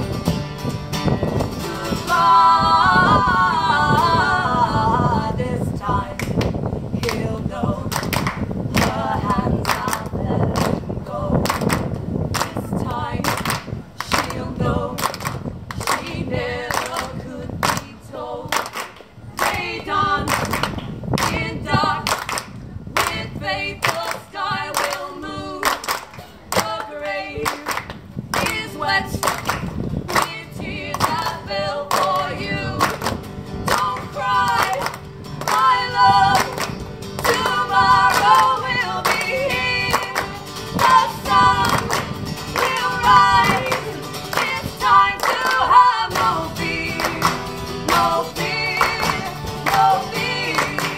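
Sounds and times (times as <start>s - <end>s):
women singing folk-pop: 1.3s - 50.9s
hand claps: 7.9s - 10.8s, 11.4s - 12.6s, 13.2s - 14.4s, 15.0s - 16.1s, 16.7s - 17.9s, 18.5s - 19.6s, 20.2s - 21.4s, 22.0s - 23.2s, 23.8s - 25.0s, 25.6s - 28.6s, 29.2s - 50.9s.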